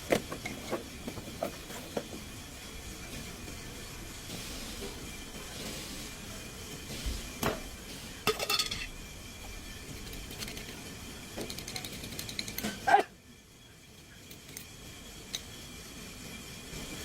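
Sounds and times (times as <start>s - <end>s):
metal tools clanking on metal: 8.3s - 8.9s.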